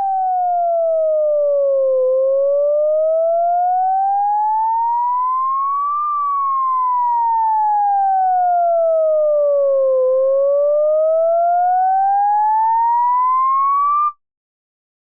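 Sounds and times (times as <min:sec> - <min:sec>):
ambulance siren wailing: 0:02.6 - 0:14.1.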